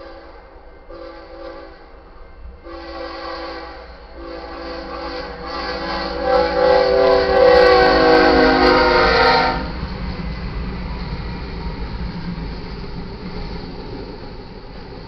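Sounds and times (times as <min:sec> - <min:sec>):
locomotive air horn blasts: 0:00.0 - 0:02.0, 0:02.6 - 0:09.7
train rumble: 0:00.0 - 0:15.0.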